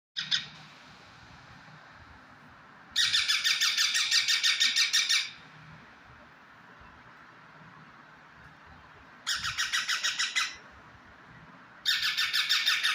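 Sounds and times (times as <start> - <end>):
parrot shrieking and screeching: 3.0 - 5.4, 9.3 - 10.6, 11.8 - 12.9.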